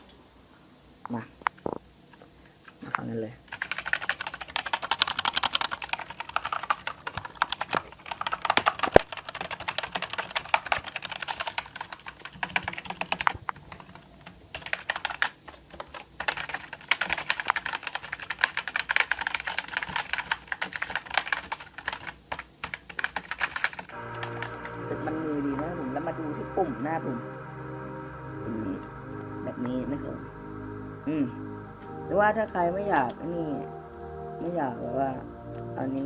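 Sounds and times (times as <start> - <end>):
fast keyboard typing: 3.5 - 25.2.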